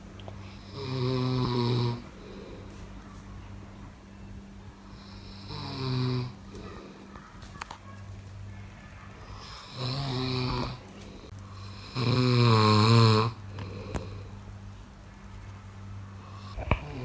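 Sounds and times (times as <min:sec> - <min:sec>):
person snoring: 0:00.5 - 0:02.7, 0:09.5 - 0:10.8, 0:11.6 - 0:14.3.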